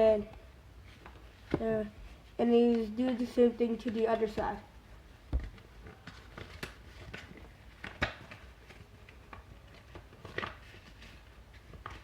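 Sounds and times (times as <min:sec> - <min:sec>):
paper rustling and crinkling: 0:05.4 - 0:12.0.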